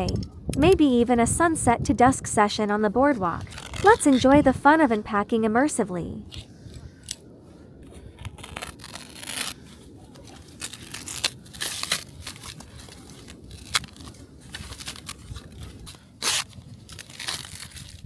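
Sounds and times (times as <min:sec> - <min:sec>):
packaging tearing and rustling: 0:03.3 - 0:04.4, 0:08.2 - 0:18.0.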